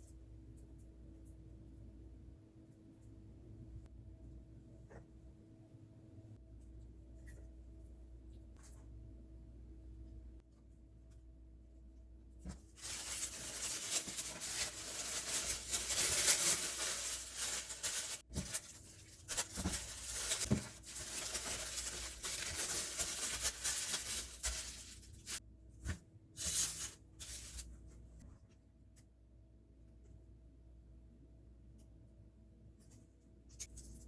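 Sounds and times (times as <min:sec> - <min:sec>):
wrapping rustling and tearing: 0:12.7 - 0:25.4, 0:26.4 - 0:27.7.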